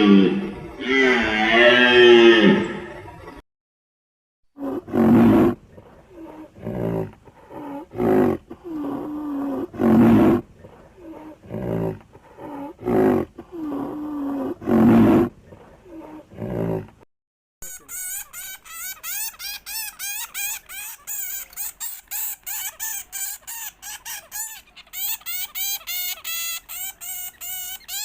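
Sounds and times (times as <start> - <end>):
large animal rasping cries: 0.0 - 2.8.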